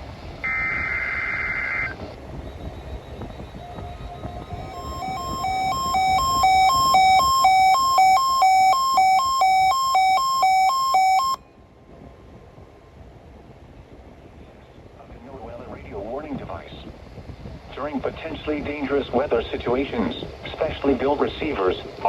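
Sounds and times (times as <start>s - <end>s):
weather radio alert alarm beeping: 0.4s - 11.4s.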